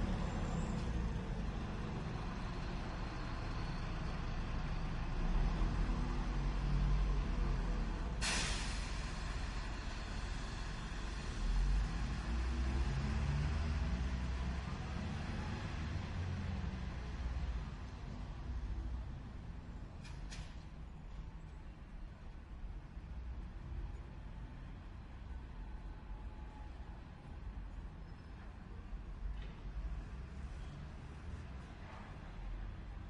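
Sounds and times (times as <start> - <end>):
air brakes hissing: 8.2 - 11.1.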